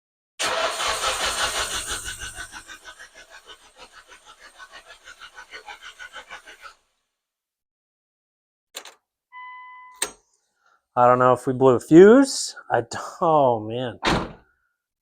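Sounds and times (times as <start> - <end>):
starter cranking engine: 0.4 - 6.7.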